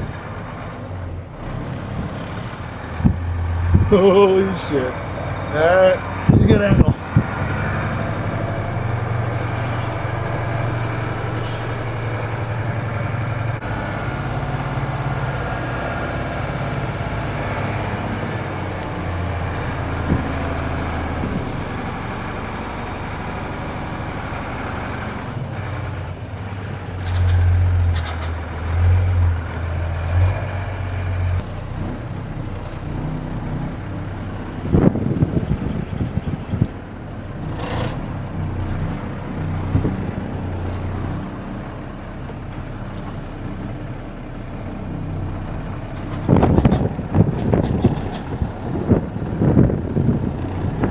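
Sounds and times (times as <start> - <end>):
truck diesel engine working: 0.0 - 50.9
clunk: 46.0 - 49.0.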